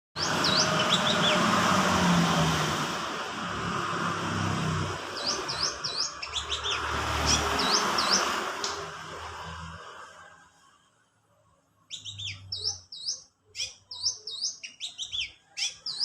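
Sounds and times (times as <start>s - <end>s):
sunbird singing: 0.2s - 1.8s, 5.0s - 8.9s, 11.9s - 16.0s.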